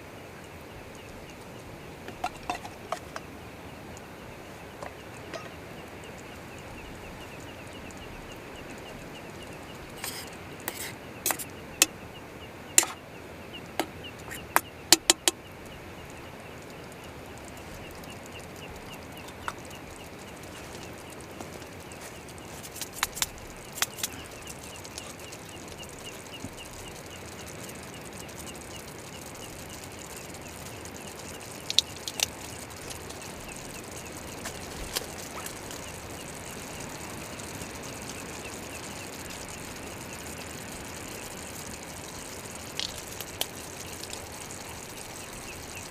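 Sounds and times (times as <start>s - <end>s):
faint rapid ticking: 0.0s - 45.9s
steady hiss: 0.0s - 45.9s
sharp knocks or snaps: 14.6s - 15.4s.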